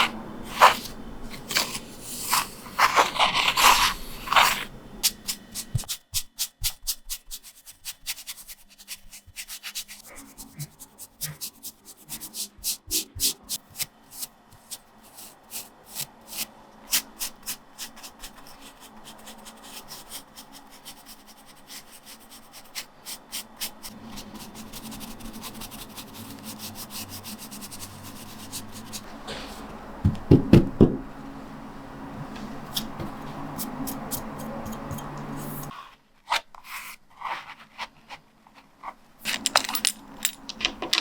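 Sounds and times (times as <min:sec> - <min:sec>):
hands rubbing linoleum block: 0:00.0 - 0:06.0.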